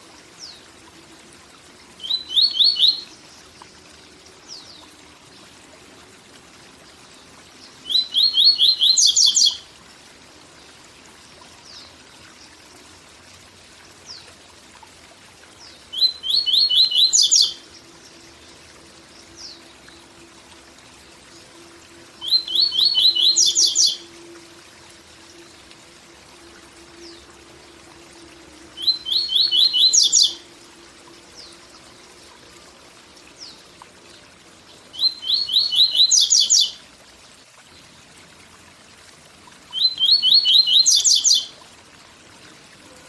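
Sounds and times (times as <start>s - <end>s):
faint waterfall rush: 0.0s - 43.0s
bird singing: 2.0s - 3.2s, 7.6s - 9.6s, 15.6s - 18.2s, 22.2s - 24.1s, 28.7s - 30.5s, 34.9s - 36.8s, 39.7s - 41.5s.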